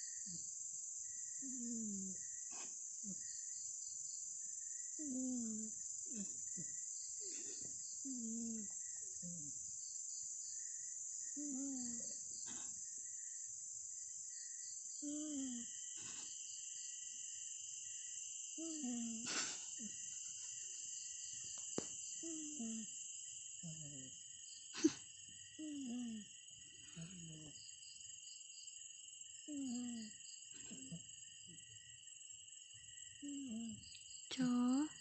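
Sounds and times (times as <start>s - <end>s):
crickets chirring: 0.0s - 35.0s
cat snoring: 25.6s - 26.2s, 33.2s - 33.7s.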